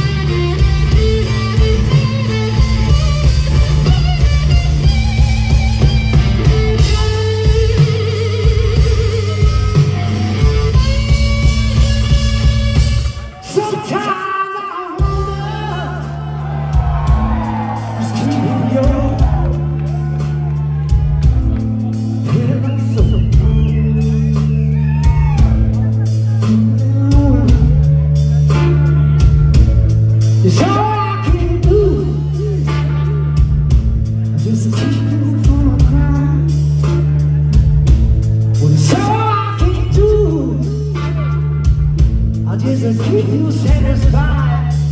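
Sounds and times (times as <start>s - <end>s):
bending electric guitar lines: 0.0s - 13.4s
bending melodic guitar line: 0.0s - 44.9s
rock band playing: 0.0s - 44.9s.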